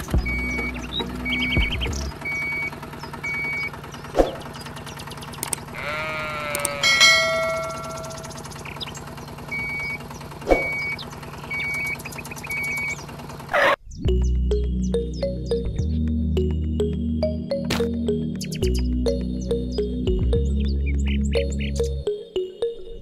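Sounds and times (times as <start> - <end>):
sheep bleating: 5.7 - 7.9.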